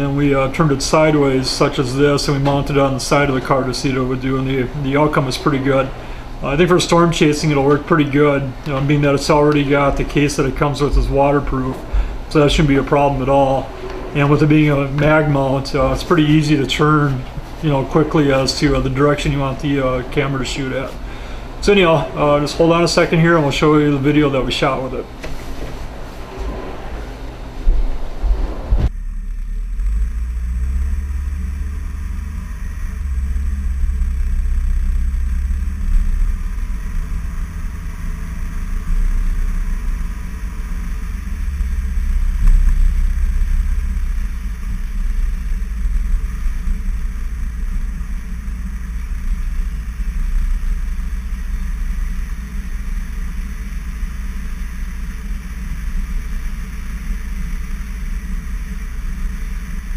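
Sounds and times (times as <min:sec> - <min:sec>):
road rumble: 0:00.0 - 0:59.9
wind from moving car: 0:26.2 - 0:59.9.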